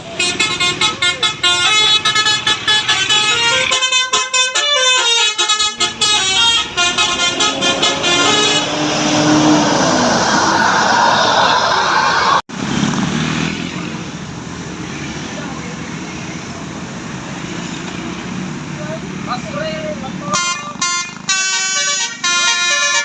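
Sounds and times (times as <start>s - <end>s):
bus horn playing a tune: 0.0s - 9.9s, 20.3s - 23.0s
rushing vehicle noise: 0.0s - 23.0s.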